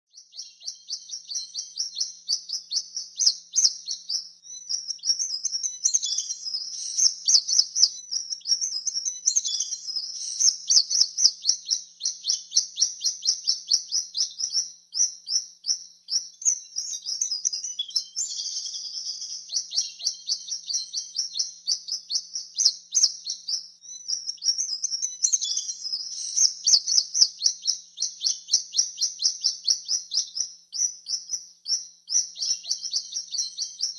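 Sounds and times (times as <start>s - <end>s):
swallows twittering: 0.2s - 30.5s.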